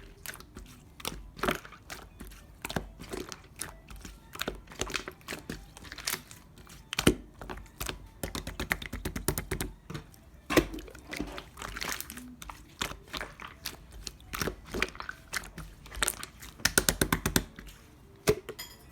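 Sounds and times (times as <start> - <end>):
slime squished by hand: 10.6 - 17.7.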